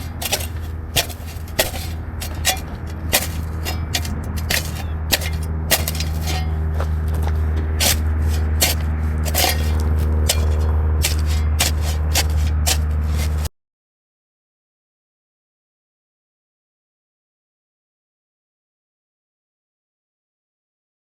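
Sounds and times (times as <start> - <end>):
low steady hum: 0.0 - 13.5
shovel digging hard ground: 0.0 - 13.5.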